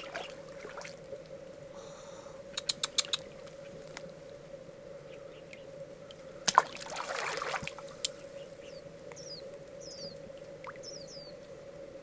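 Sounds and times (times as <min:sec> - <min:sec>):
faint steady hum: 0:00.0 - 0:12.0
small birds chirping: 0:02.5 - 0:04.0, 0:05.0 - 0:05.8, 0:08.0 - 0:11.5.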